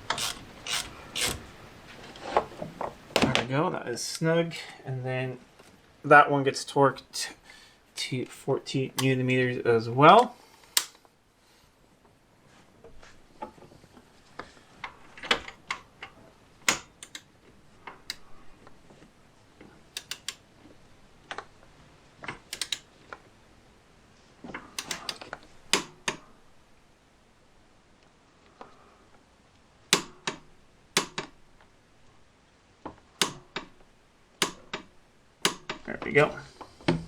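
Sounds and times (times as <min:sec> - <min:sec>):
ratchet torque wrench clicking: 0:00.1 - 0:01.4.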